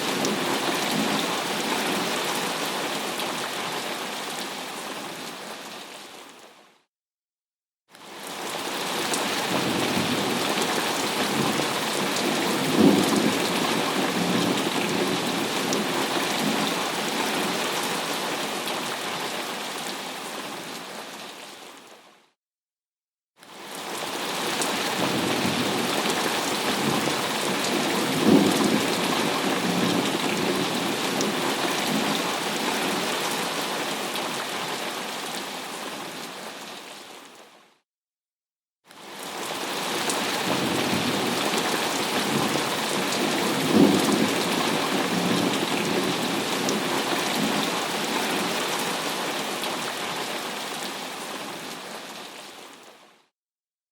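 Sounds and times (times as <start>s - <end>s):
heavy rain: 0.0s - 6.6s, 8.0s - 21.9s, 23.5s - 37.4s, 39.0s - 53.0s.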